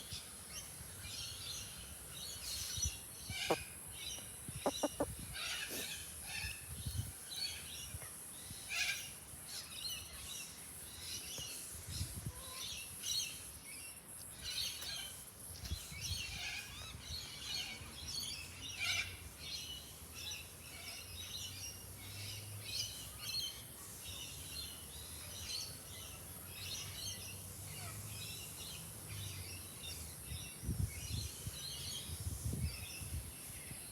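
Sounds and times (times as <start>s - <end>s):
birds chirping: 3.3s - 5.9s.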